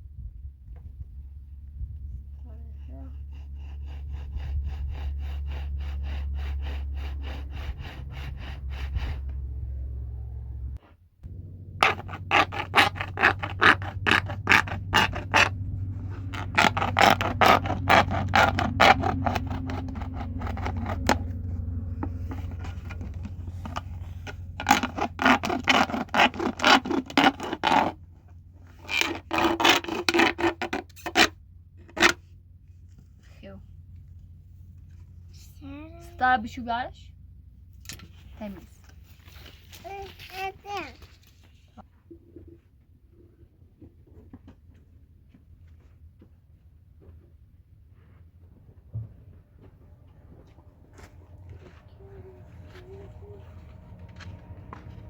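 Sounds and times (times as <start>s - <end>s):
low steady hum: 0.0s - 42.2s, 46.0s - 55.0s
rhythmic scraping strokes: 2.6s - 9.8s, 11.3s - 28.0s, 50.4s - 55.0s.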